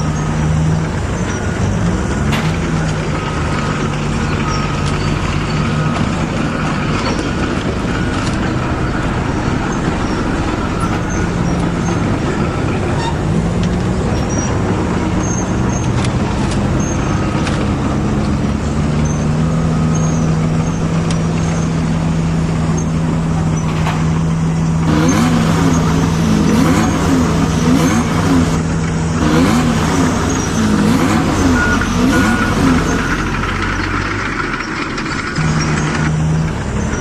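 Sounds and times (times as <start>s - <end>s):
vehicle engine hum: 0.0s - 37.0s
rising and falling whine: 13.6s - 33.9s.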